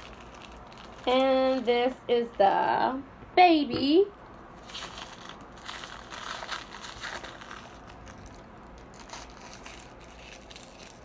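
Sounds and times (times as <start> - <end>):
plastic wrappers crinkling: 0.0 - 2.4, 4.6 - 11.0.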